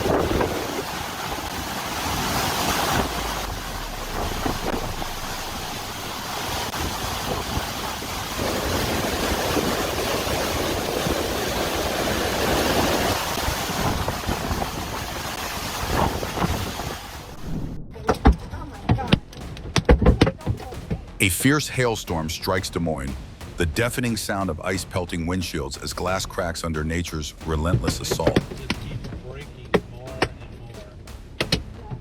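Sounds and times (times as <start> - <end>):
rushing water: 0.0 - 17.8
rushing wind: 0.0 - 18.1
wind buffeting microphone: 0.0 - 19.6.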